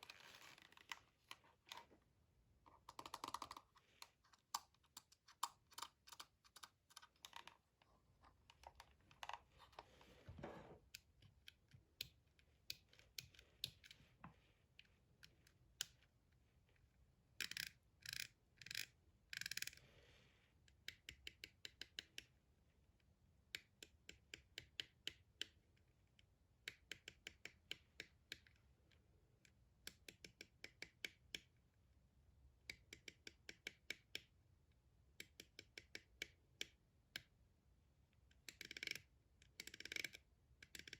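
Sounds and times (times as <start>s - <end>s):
scratching and rubbing: 0.0s - 1.5s
keyboard and mouse clicking: 2.9s - 7.6s.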